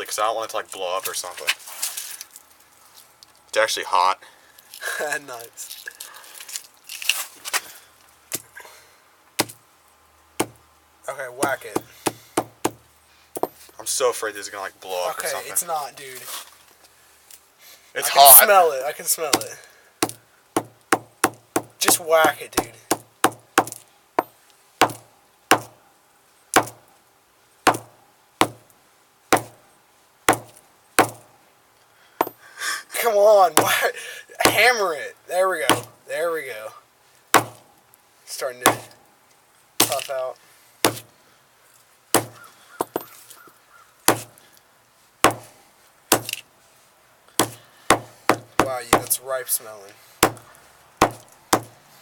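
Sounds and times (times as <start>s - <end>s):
sledgehammer strikes: 9.4s - 9.6s, 10.4s - 10.6s, 11.4s - 12.8s, 19.2s - 25.8s, 26.5s - 26.9s, 27.7s - 28.7s, 29.3s - 29.6s, 30.3s - 31.3s, 33.6s - 34.8s, 35.6s - 36.0s, 37.3s - 37.7s, 38.6s - 39.0s, 39.8s - 40.2s, 40.8s - 41.1s, 42.1s - 43.1s, 44.1s - 44.4s, 45.2s - 46.4s, 47.4s - 49.2s, 50.2s - 51.8s.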